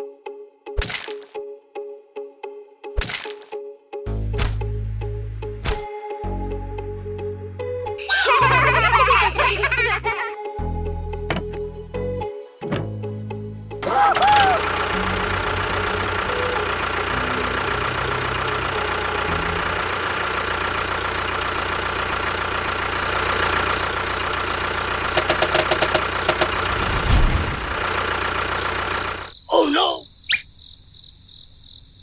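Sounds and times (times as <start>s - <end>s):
model vehicle motor running: 14.1s - 29.3s
sharp clicks: 25.2s - 27.6s.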